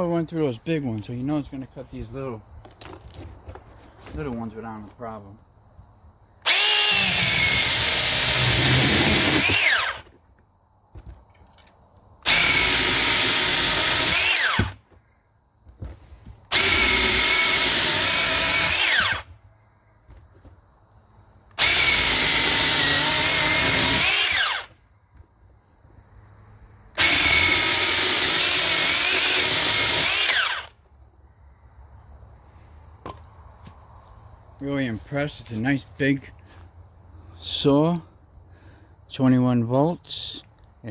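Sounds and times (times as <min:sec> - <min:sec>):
electric chainsaw whining: 0:06.4 - 0:10.2, 0:12.2 - 0:14.8, 0:16.5 - 0:19.4, 0:21.5 - 0:24.8, 0:26.9 - 0:30.8.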